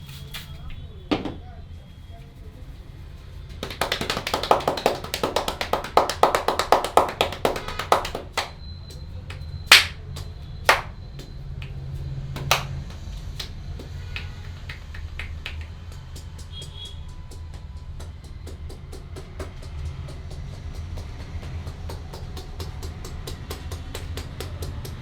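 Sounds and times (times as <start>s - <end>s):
rapid hand-tapping on head: 3.5s - 8.6s, 9.3s - 11.8s, 12.4s - 25.0s
sharp finger snaps: 8.0s - 11.8s, 12.4s - 25.0s.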